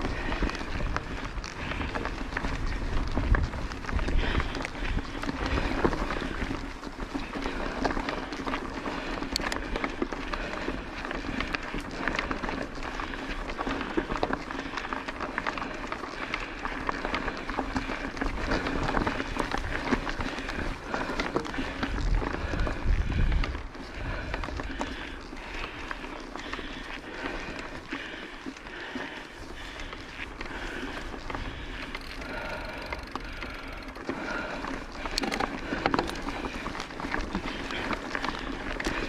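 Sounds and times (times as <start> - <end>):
wind buffeting microphone: 0.0 - 8.2, 17.8 - 25.7
bike clicks and rattles: 0.0 - 39.0
bike tyres rolling on dirt: 0.0 - 39.0
rider breathing hard: 0.0 - 39.0.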